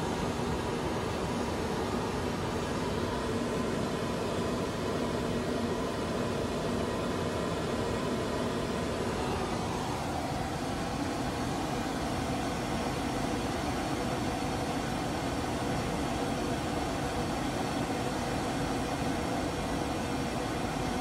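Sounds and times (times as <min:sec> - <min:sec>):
pink noise through car speakers: 0:00.0 - 0:21.0.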